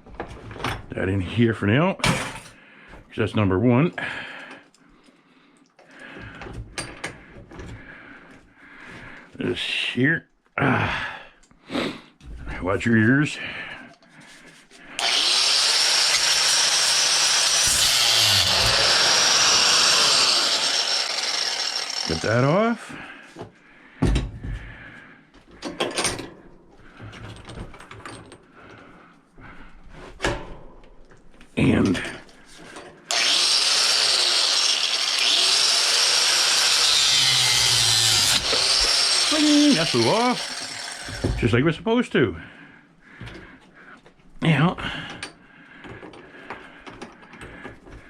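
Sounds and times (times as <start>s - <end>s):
angle grinder cutting metal: 15.0s - 22.8s, 33.1s - 41.5s.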